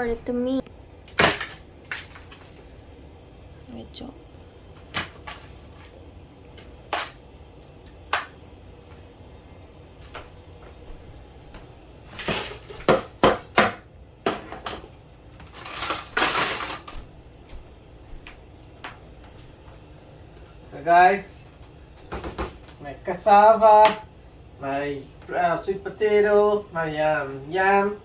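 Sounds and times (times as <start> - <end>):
pots and utensils clattering: 12.2 - 17.0.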